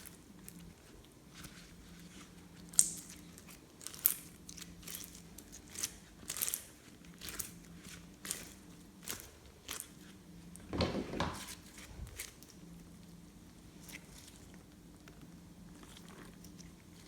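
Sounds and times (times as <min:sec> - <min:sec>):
slime crackling and popping: 0:02.7 - 0:03.2, 0:03.8 - 0:07.6.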